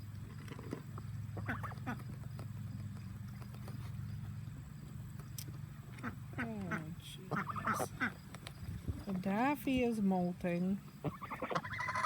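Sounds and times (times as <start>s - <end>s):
ducks calling softly: 1.1s - 9.2s, 10.8s - 12.0s.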